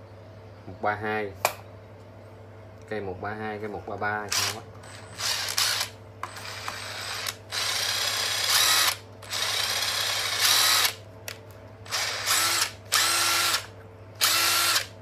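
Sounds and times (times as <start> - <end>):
impact driver motor whining: 4.3 - 11.0, 11.9 - 14.9.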